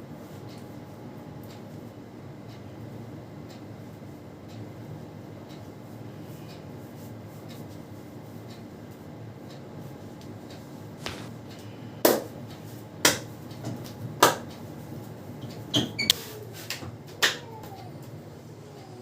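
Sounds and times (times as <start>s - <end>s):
hands slapping skin: 11.0s - 11.3s.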